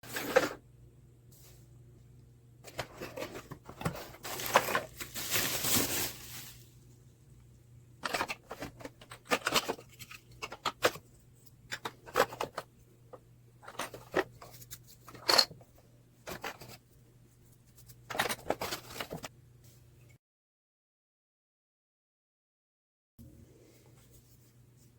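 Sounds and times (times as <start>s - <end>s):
packaging rustling and tearing: 2.7s - 6.8s.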